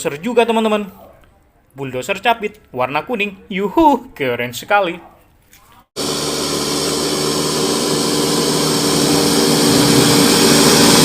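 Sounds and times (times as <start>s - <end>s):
small motor humming: 6.0s - 11.0s.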